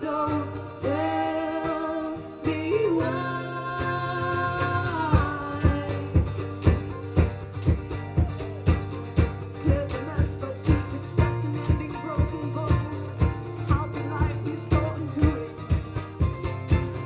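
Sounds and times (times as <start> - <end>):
live band playing: 0.8 - 17.0.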